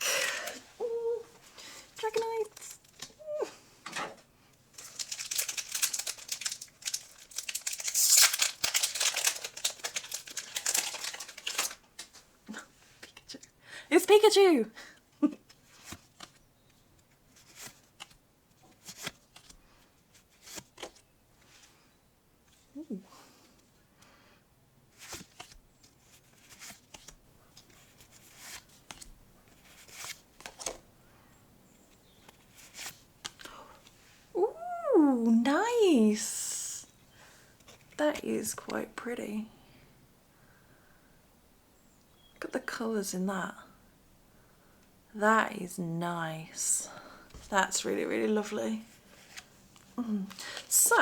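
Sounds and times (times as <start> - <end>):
card packaging crinkling: 4.7 - 12.3
packaging ripping: 4.8 - 12.2.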